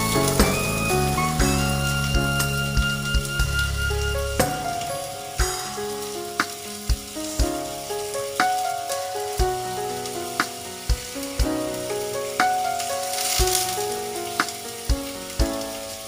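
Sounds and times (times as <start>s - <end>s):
background music with thumping beat: 0.0s - 7.8s, 10.4s - 11.8s, 14.4s - 15.7s
food sizzling in a pan: 0.0s - 16.0s.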